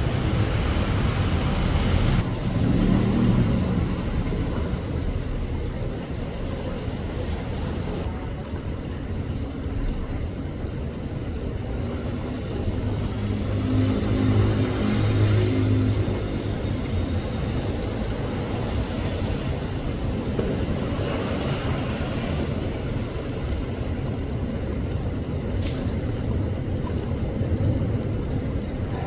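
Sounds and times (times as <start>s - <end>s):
rain hiss: 0.0s - 4.3s
wind rumbling on microphone: 0.0s - 29.0s.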